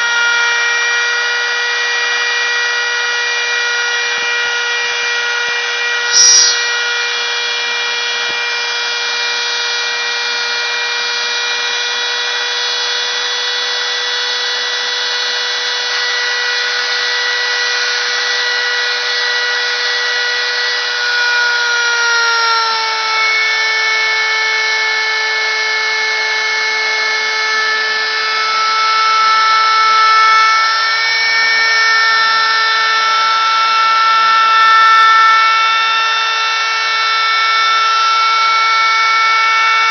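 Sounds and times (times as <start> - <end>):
router spindle whine: 0.0 - 39.9
sharp click: 6.2 - 6.7.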